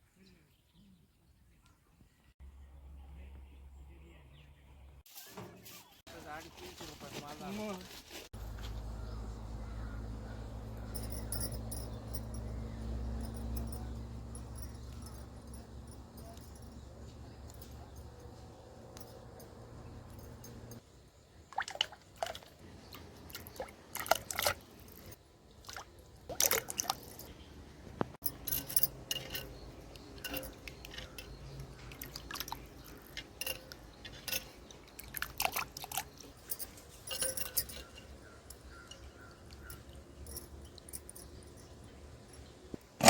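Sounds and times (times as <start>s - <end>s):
glassware and utensils clinking: 8.6s - 20.8s, 28.2s - 41.8s
liquid being handled: 21.5s - 27.4s, 28.2s - 41.7s.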